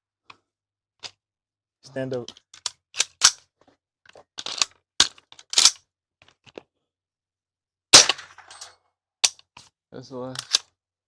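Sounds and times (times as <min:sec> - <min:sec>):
rifle shots: 0:08.0 - 0:08.5.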